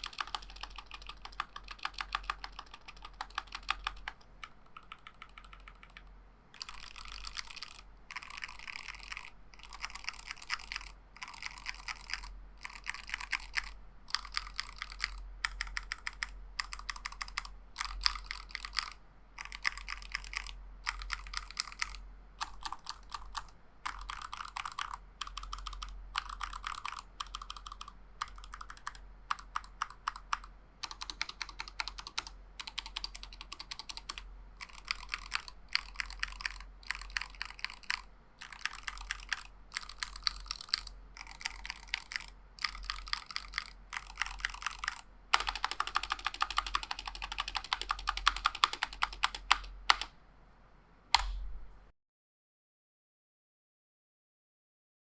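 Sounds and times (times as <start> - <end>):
mechanical keyboard typing: 0.0 - 50.1, 51.2 - 51.4.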